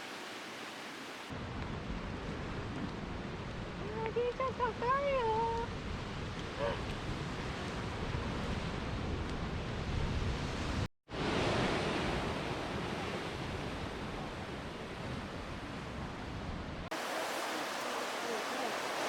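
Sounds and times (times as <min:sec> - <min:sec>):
ocean surf: 0:00.0 - 0:01.4, 0:10.2 - 0:19.0.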